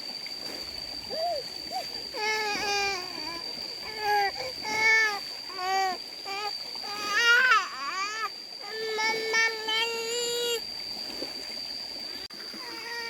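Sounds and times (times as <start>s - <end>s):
young child crying: 2.2s - 10.6s.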